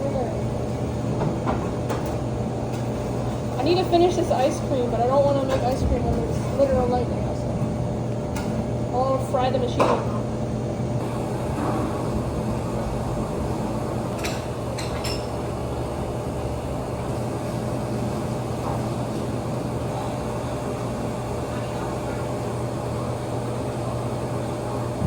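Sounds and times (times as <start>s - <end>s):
machinery humming: 0.0s - 25.0s.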